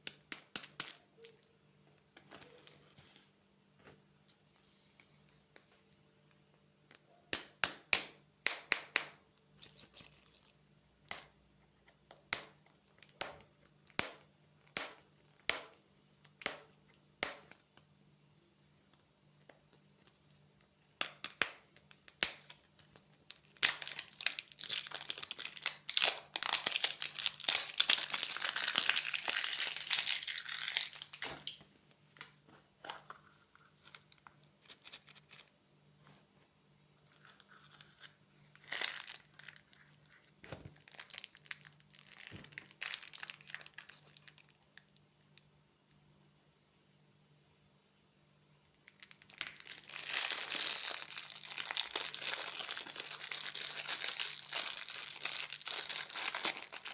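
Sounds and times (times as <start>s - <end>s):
plastic wrappers crinkling and tearing: 9.4s - 11.3s, 21.2s - 35.6s, 37.2s - 44.6s, 48.9s - 56.9s.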